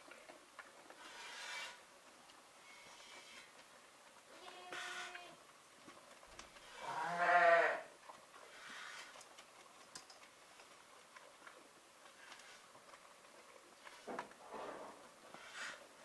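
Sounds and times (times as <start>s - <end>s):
farm animal bleating: 4.3s - 5.4s, 6.6s - 7.9s.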